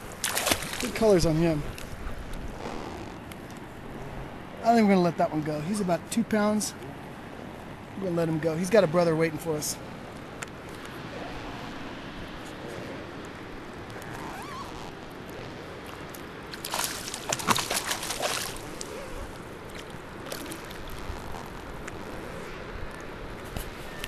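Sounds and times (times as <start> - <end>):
fish splashing in water: 0.0 - 1.0, 16.5 - 21.0
water sloshing and splashing: 0.0 - 4.2, 13.9 - 22.1.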